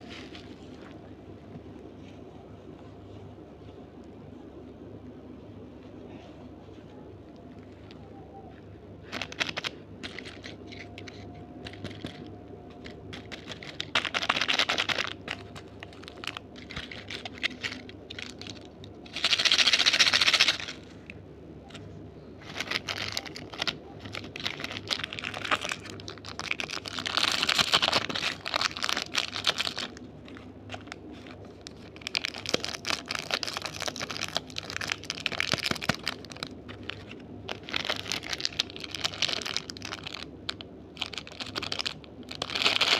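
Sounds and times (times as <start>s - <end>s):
plastic wrappers crinkling: 9.0s - 42.9s.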